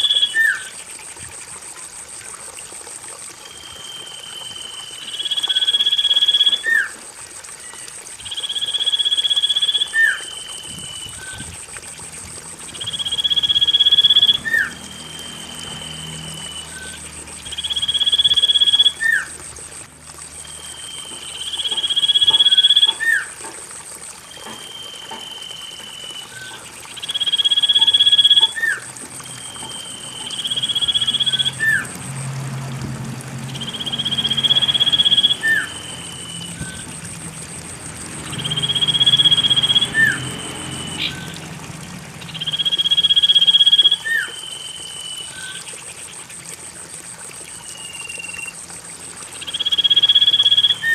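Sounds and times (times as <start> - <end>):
recorded bird whistle calls: 0.0 - 0.7, 3.4 - 7.0, 7.6 - 11.5, 12.7 - 19.3, 20.4 - 23.3, 24.3 - 31.9, 33.5 - 37.1, 38.3 - 41.4, 42.2 - 45.8, 47.5 - 48.6, 49.4 - 50.9
thin steady high tone: 0.0 - 32.3, 33.3 - 41.6, 42.2 - 50.9.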